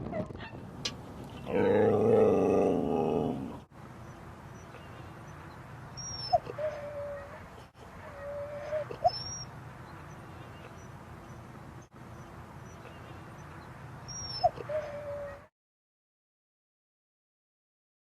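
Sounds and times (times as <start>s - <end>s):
dog whining: 6.0s - 9.5s, 14.1s - 15.5s.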